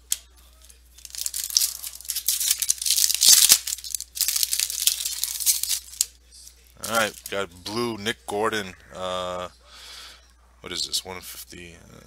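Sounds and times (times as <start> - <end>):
foil wrapper tearing and crinkling: 1.0 - 6.1, 6.8 - 7.4.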